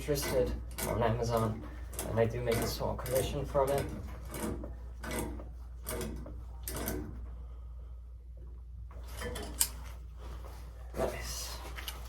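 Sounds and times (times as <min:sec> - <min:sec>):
pliers scraping pipe fitting: 0:00.0 - 0:07.1, 0:09.1 - 0:09.9
steady low hum: 0:00.0 - 0:12.0.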